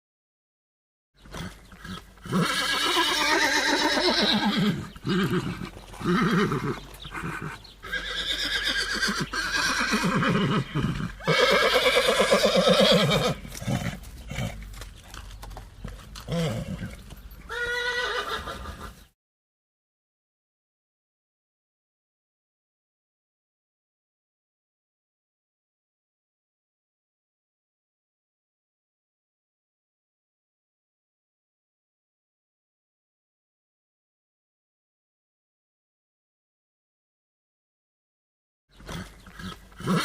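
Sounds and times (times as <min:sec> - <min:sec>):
horse whinnying: 0:01.3 - 0:14.6, 0:16.2 - 0:19.1, 0:38.8 - 0:40.0.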